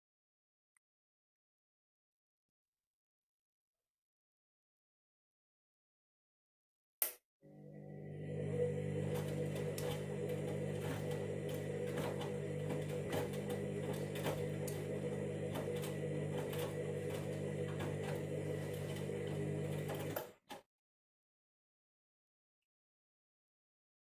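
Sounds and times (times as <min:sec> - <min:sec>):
washing machine motor humming: 0:07.5 - 0:20.5.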